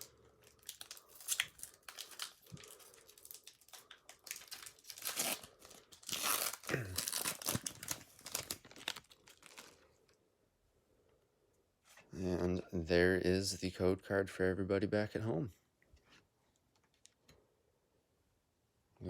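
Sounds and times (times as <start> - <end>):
foil wrapper tearing and crinkling: 0.0 - 9.8.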